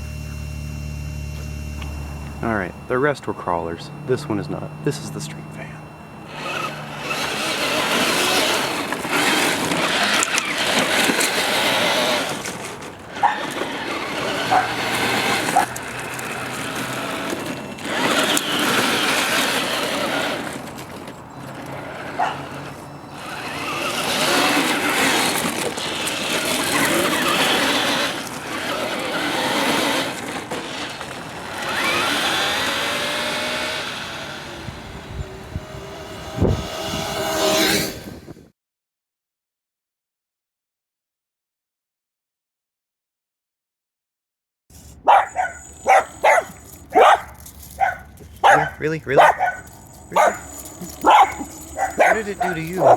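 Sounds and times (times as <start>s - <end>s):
rc car motor whining: 0.0s - 38.5s, 44.7s - 52.9s
tyres scrubbing: 6.2s - 34.6s, 44.7s - 52.9s.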